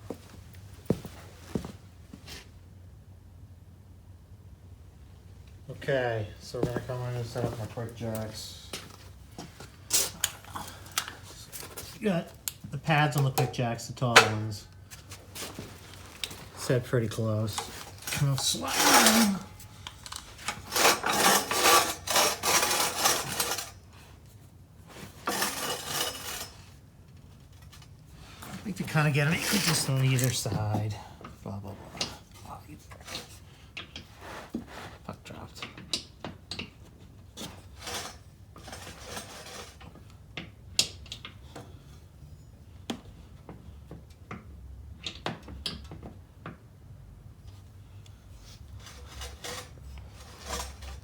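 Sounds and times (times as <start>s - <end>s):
metal frames scraping across floor: 13.4s - 14.6s, 15.2s - 24.1s, 24.9s - 26.8s, 28.2s - 31.0s, 37.5s - 39.9s, 48.7s - 51.0s.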